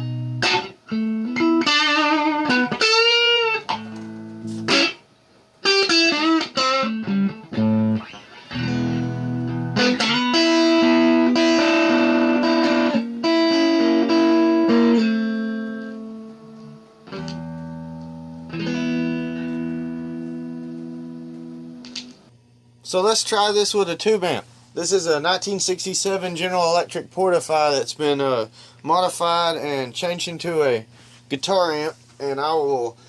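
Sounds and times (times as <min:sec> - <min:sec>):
electric guitar through an amp: 0:00.0 - 0:05.0, 0:05.6 - 0:22.3.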